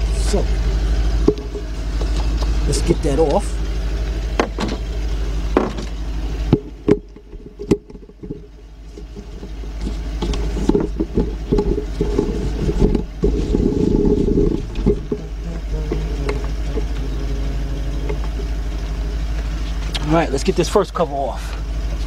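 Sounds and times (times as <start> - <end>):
engine idling rough with misfire: 0.0 - 22.0.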